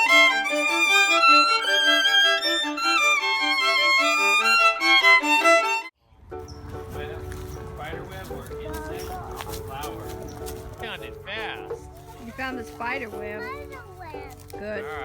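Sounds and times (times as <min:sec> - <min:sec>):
quick instrumental melody: 0:06.5 - 0:15.0.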